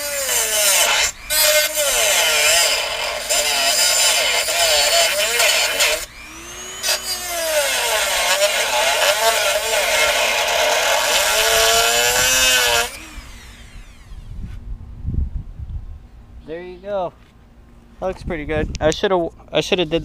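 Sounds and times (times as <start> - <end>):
rotary tool cutting whine: 0.0 - 14.4.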